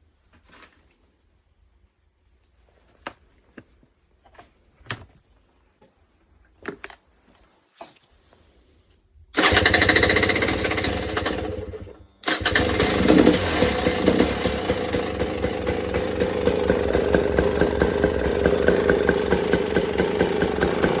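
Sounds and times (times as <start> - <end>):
dirt bike engine revving and idling: 9.4 - 21.0.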